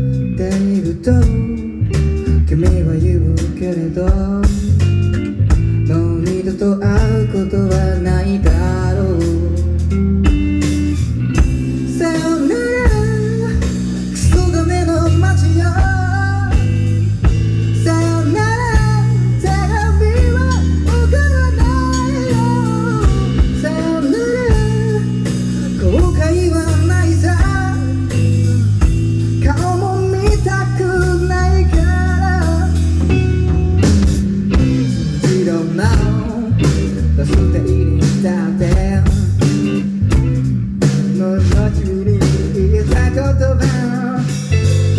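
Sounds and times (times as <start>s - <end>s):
bass guitar: 0.0s - 44.9s
drums: 0.0s - 44.9s
electric guitar: 0.0s - 44.9s.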